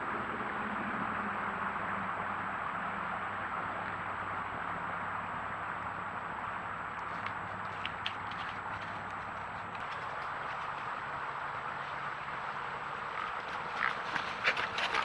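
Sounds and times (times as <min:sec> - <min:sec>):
faint ticks: 0:07.0 - 0:11.2.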